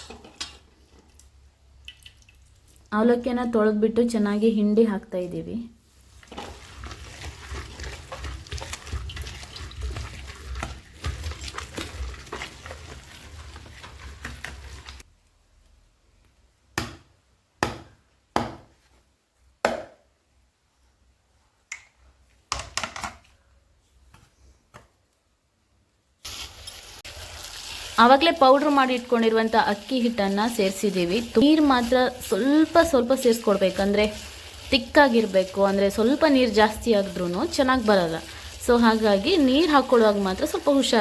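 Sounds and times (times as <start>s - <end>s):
water splashing in a bowl: 1.8s - 2.9s, 6.2s - 15.0s.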